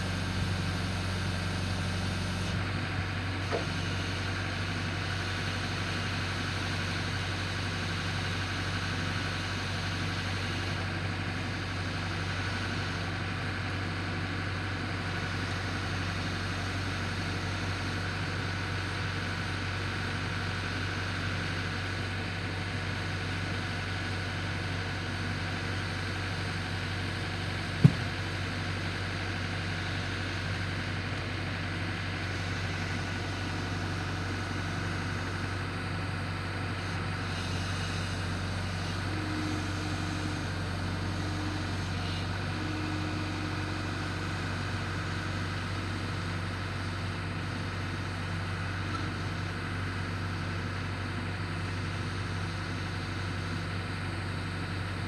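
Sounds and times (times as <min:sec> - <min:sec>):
engine running steadily: 0:00.0 - 0:55.0
sharp knock: 0:27.8 - 0:28.1.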